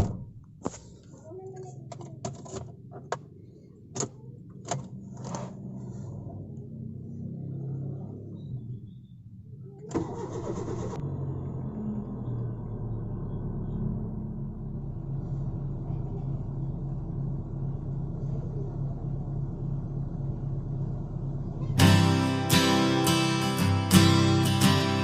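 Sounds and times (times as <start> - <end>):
car engine idling: 2.7 - 25.0
car engine cranking on starter: 9.9 - 13.6.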